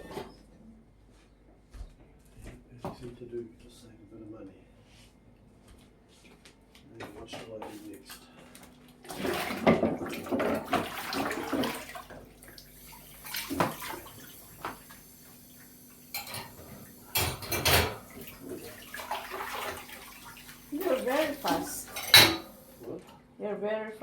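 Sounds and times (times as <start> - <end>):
water splashing in sink: 9.0 - 23.0
dishes and cutlery knocking: 17.1 - 18.0, 22.0 - 22.5.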